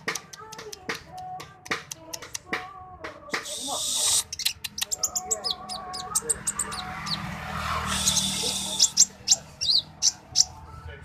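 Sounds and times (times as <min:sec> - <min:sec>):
bird singing high chirps: 0:03.4 - 0:10.6.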